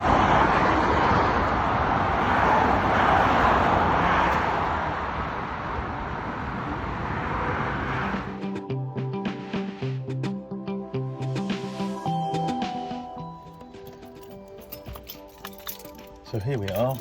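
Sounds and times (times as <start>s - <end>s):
road vehicle rushing noise: 0.0s - 8.6s.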